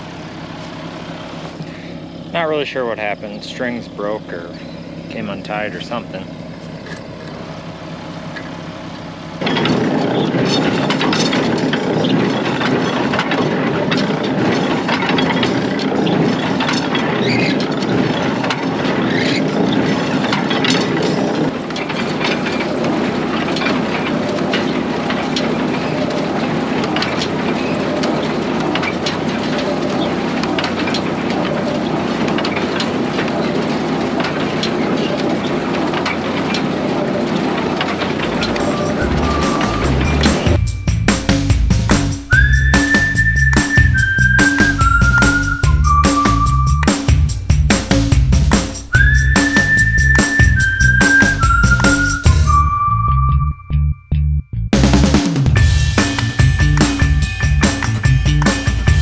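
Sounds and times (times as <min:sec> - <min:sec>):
tractor and baler engine noise: 0:00.0 - 0:46.9.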